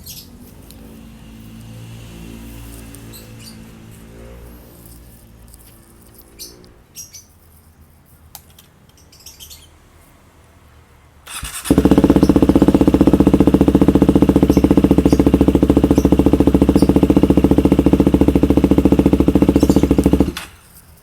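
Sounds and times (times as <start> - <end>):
motorcycle engine idling: 11.3 - 20.6.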